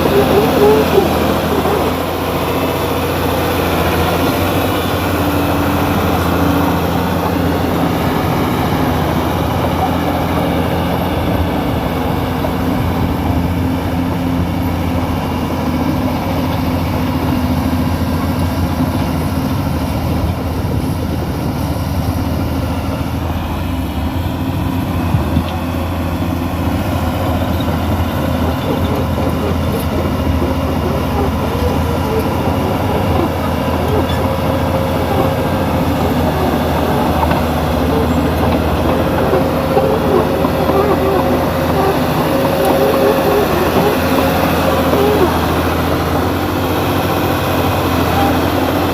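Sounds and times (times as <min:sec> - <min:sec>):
diesel engine running: 0:00.0 - 0:48.9
steel tracks clattering: 0:25.0 - 0:48.9.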